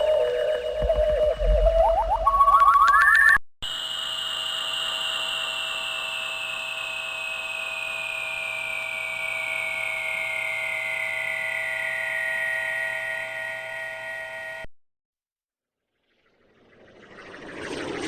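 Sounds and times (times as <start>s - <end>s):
electronic drone sliding down in pitch: 16.0s - 18.0s.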